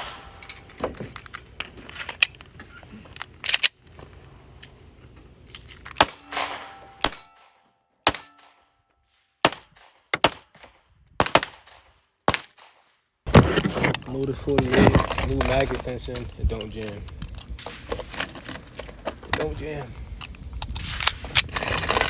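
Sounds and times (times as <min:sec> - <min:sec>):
pistol shots: 0:05.9 - 0:08.7, 0:09.3 - 0:12.9.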